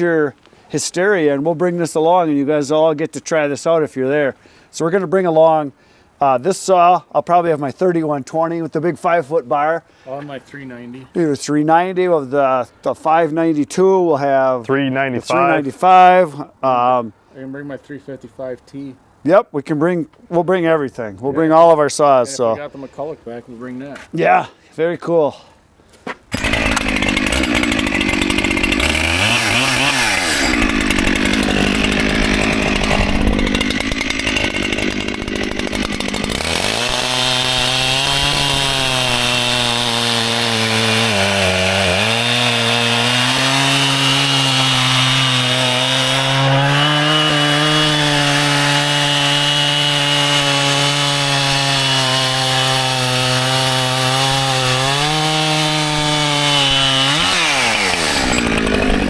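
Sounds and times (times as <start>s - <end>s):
chainsaw running: 26.3s - 59.0s.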